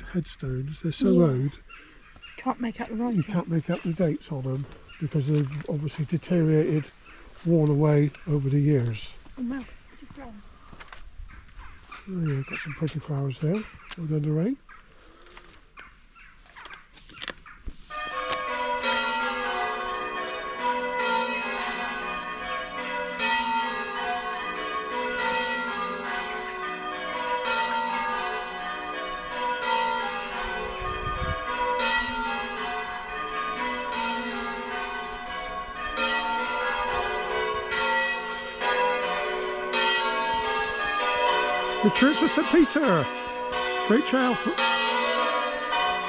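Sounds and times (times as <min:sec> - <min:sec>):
church bells ringing: 0:00.0 - 0:01.9, 0:02.6 - 0:09.2, 0:17.8 - 0:46.0.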